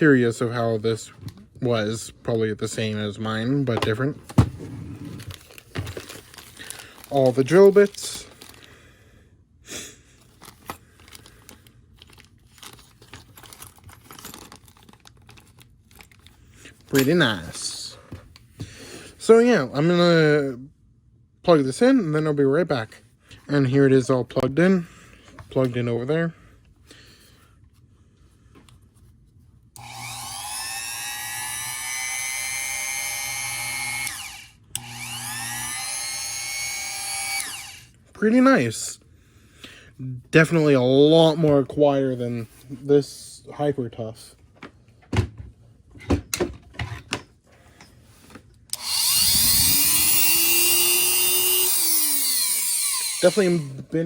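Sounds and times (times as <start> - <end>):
plastic packaging crinkling: 5.2 - 8.7, 10.3 - 16.3
rotary tool high whine: 29.8 - 38.0, 48.7 - 53.8.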